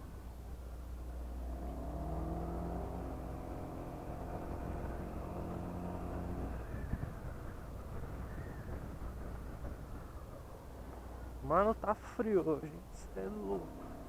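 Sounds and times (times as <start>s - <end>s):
scooter engine under throttle: 1.4s - 9.6s.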